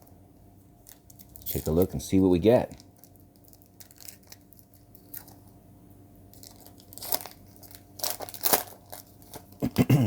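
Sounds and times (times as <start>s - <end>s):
wrapper tearing and crinkling: 0.8s - 5.5s, 6.3s - 9.6s.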